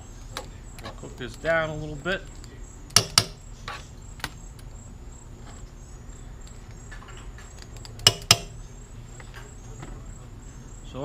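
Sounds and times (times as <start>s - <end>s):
utensils knocking on cookware: 2.9s - 3.4s, 8.0s - 8.6s.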